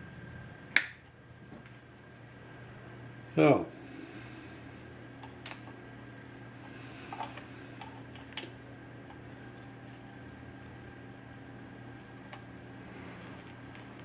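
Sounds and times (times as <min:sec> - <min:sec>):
steady low hum: 0:00.0 - 0:14.0
hand tools and wire clicking: 0:07.1 - 0:09.2.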